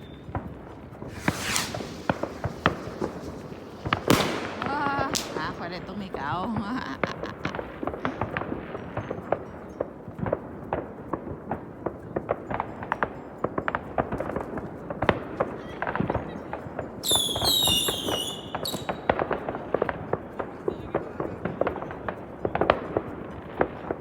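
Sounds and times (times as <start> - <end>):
firework whistle: 0.0 - 0.3, 1.0 - 5.7, 17.0 - 19.2
fireworks and firecrackers banging: 0.0 - 24.0.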